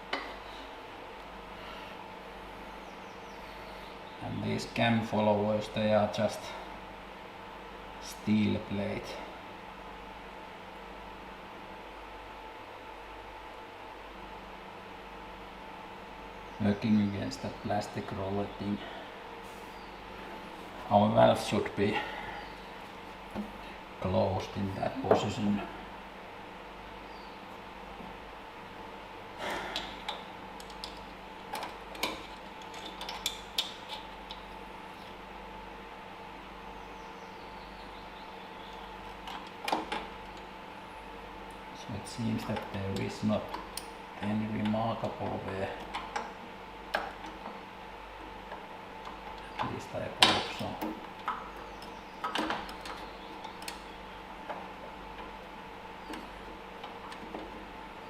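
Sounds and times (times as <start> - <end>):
faint steady hum: 0.0 - 58.0
tools and metal parts clicking: 29.8 - 34.4.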